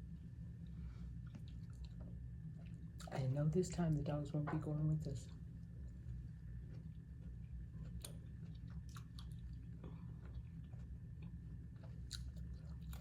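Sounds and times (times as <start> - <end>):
steady low hum: 0.0 - 13.0
person chewing salad: 0.6 - 3.2, 5.3 - 13.0.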